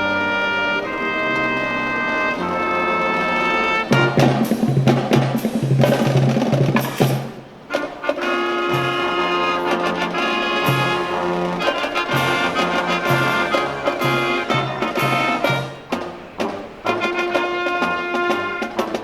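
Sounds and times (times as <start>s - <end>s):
marching band brass playing: 0.0s - 19.0s
drums: 0.4s - 19.0s
pulsing bass line: 3.8s - 7.3s.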